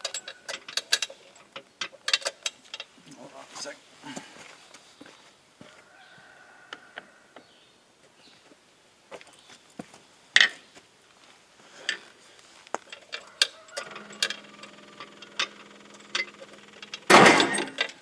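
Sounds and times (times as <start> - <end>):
metallic clinks on drive chain: 12.9 - 18.0
starter motor whirring hum: 13.3 - 18.0.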